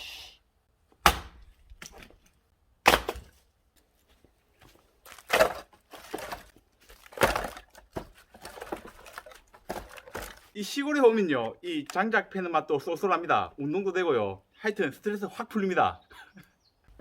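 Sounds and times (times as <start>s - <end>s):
wood tearing crackle: 5.0s - 10.5s.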